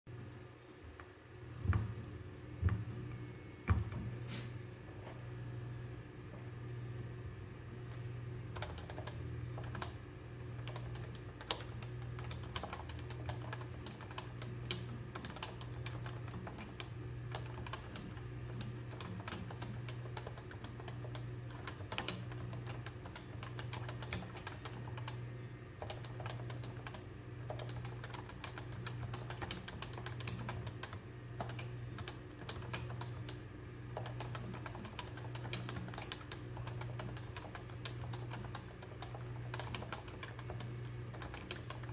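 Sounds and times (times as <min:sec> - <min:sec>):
steady low hum: 0:00.1 - 0:41.9
keyboard typing clicks: 0:08.5 - 0:10.0, 0:10.6 - 0:25.2, 0:25.8 - 0:33.4, 0:34.0 - 0:41.9.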